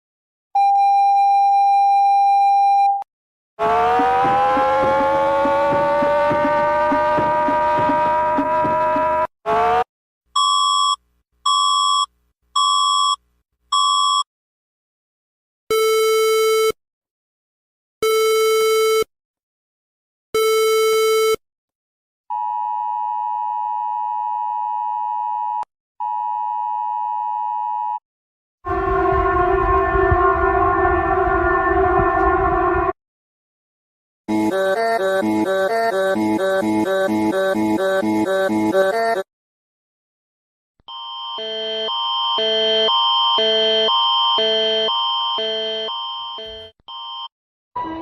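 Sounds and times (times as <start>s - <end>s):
harsh buzzy alarm tone: 3.6s - 9.9s, 34.3s - 39.2s, 40.9s - 47.1s
low buzzy tones: 28.7s - 33.0s
short beeps: 43.0s - 47.3s.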